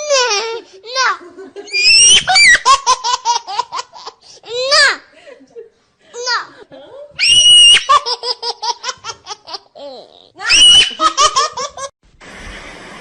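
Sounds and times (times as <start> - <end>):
high-pitched laughter: 10.5 - 11.9
steady hiss: 12.1 - 13.0.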